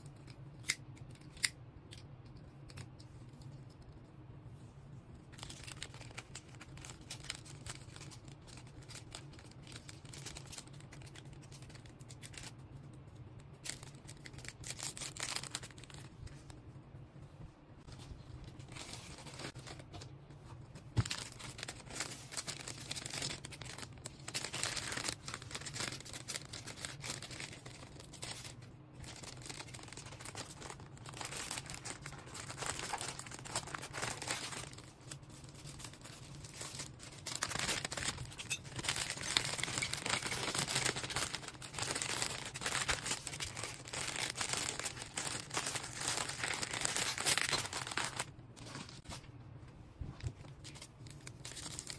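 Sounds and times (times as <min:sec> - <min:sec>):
packaging crinkling and tearing: 0:05.4 - 0:12.6, 0:13.5 - 0:16.3, 0:18.4 - 0:20.0, 0:21.0 - 0:49.2, 0:50.4 - 0:51.9.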